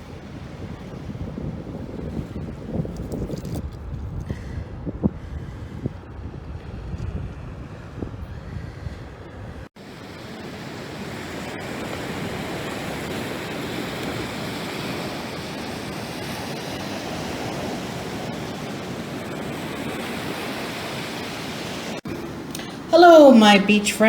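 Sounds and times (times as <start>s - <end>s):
ocean surf washing: 0.0s - 3.0s, 8.7s - 24.0s
wind rumbling on microphone: 0.0s - 22.0s.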